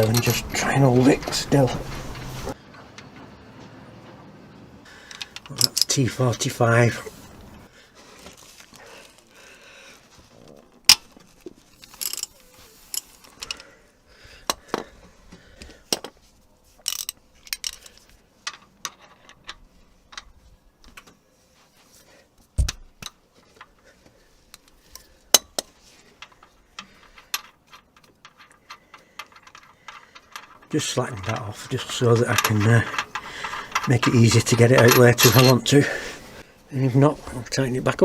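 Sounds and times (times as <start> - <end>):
metal tools clinking: 0.0 - 3.1, 5.0 - 7.6, 11.6 - 13.7, 16.8 - 20.3, 24.6 - 36.4.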